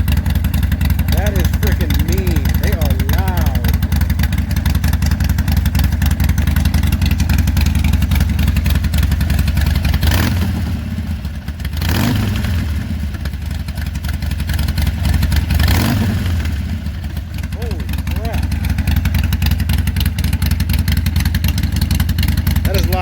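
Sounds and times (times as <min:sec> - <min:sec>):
motorcycle throttle blips: 0:00.0 - 0:10.7
motorcycle exhaust note: 0:00.0 - 0:23.0.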